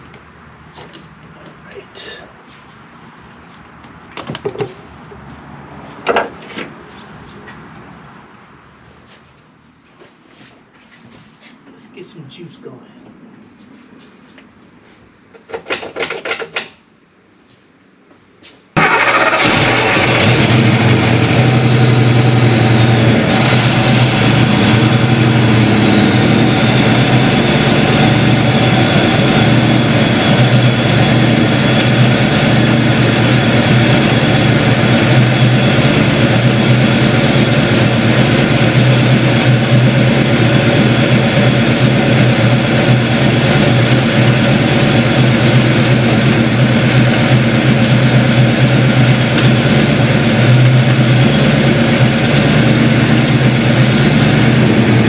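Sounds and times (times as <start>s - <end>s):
car engine idling loudly: 18.8s - 55.0s.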